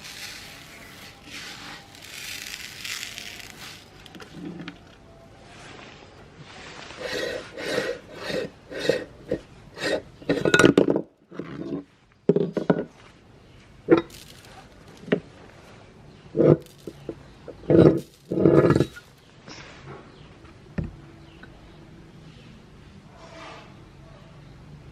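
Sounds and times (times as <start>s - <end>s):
meat grinder crunching hard items: 0.0s - 4.3s.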